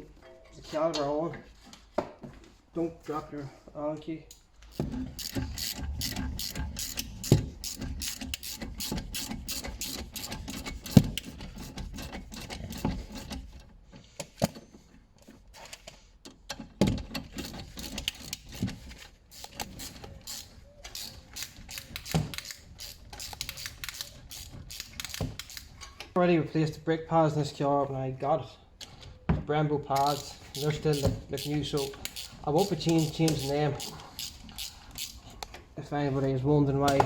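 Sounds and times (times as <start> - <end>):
hand ratchet clicking: 4.7 - 11.3, 17.3 - 25.8, 30.0 - 35.4.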